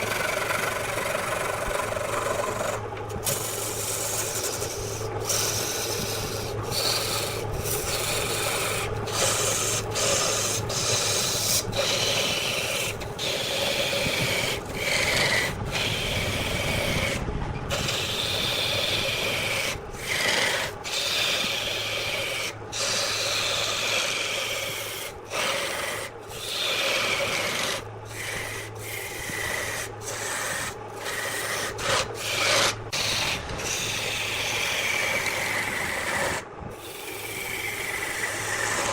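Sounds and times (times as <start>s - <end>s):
lathe motor hum: 0.0s - 38.9s
tool scraping spinning wood: 0.0s - 38.9s.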